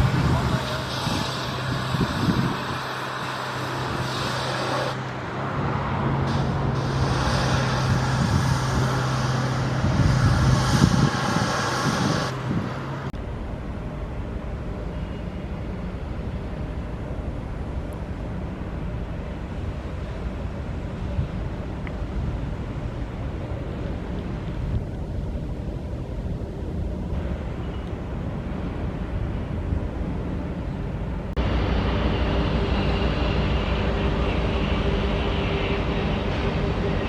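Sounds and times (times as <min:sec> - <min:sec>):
wind on microphone: 0:00.0 - 0:13.1
engine humming: 0:00.0 - 0:37.0
traffic noise: 0:00.0 - 0:37.0.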